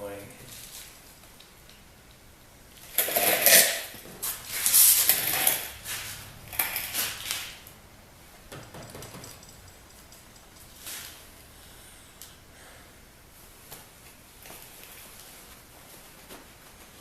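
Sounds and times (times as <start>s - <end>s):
parts and tools rattling and scraping: 2.8s - 7.7s, 8.5s - 11.3s.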